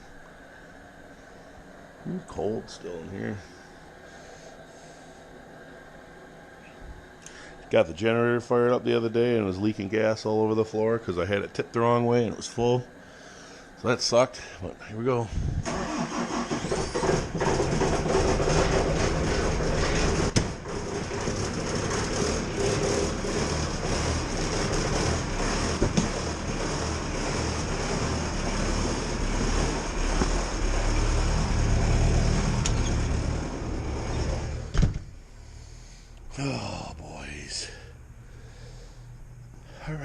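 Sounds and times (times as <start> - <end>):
diesel engine running: 15.4 - 36.6.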